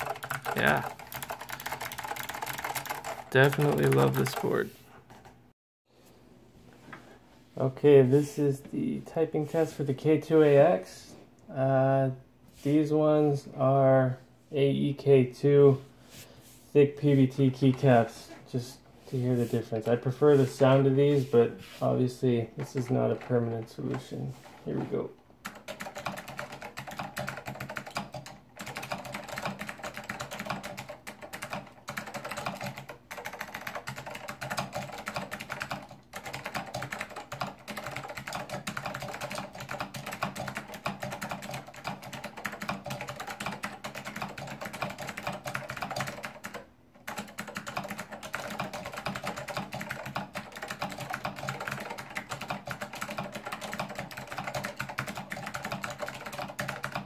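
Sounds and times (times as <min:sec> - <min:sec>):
clicky keyboard typing: 0:00.0 - 0:04.6, 0:25.5 - 0:57.0.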